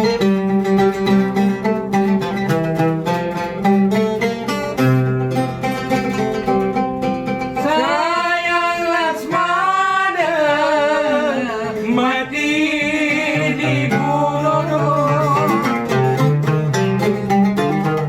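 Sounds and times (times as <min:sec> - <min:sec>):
plucked string accompaniment: 0:00.0 - 0:18.0
person singing ornamented phrases: 0:07.6 - 0:15.9.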